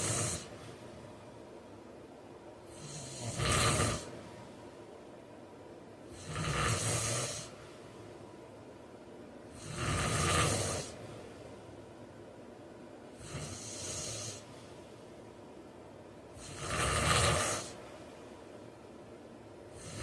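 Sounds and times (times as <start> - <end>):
man snoring: 0.0 - 0.5, 2.7 - 4.1, 6.1 - 7.5, 9.5 - 11.0, 13.2 - 14.5, 16.4 - 17.8, 19.7 - 20.0
quiet breathing: 0.0 - 5.1, 5.9 - 12.2, 13.0 - 20.0.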